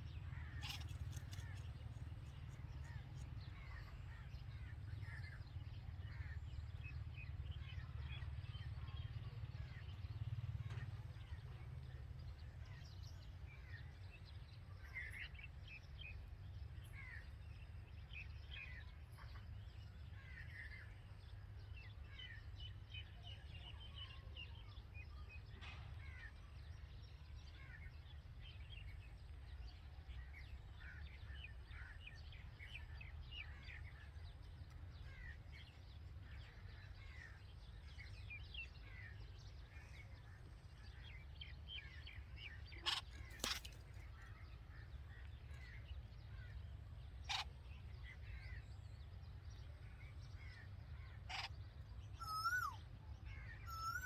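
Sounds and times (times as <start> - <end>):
birds chirping: 0.0 - 5.4, 30.2 - 54.0.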